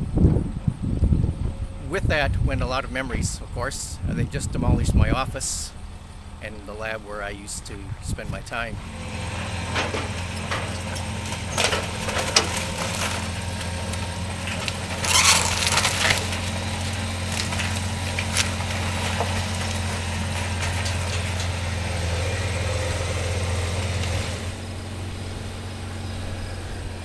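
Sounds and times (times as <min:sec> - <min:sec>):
heavy machine engine running: 0:00.0 - 0:27.0
wood splintering and crunching: 0:08.8 - 0:27.0
loud crashes: 0:09.3 - 0:26.6.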